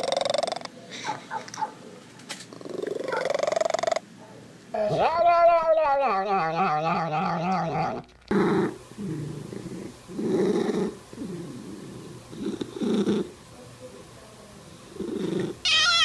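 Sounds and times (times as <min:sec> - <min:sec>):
cat rumbling in pulses: 0:06.1 - 0:13.4, 0:15.0 - 0:16.0
cat yowling: 0:15.6 - 0:16.0.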